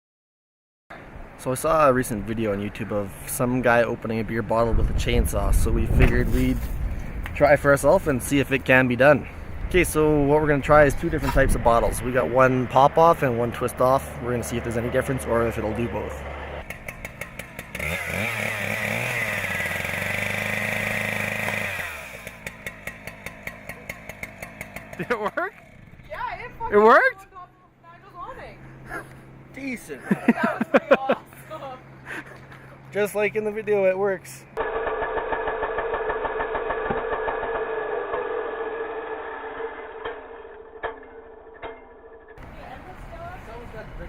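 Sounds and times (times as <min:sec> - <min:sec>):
chainsaw revving and idling: 0:14.1 - 0:26.1, 0:34.6 - 0:40.3.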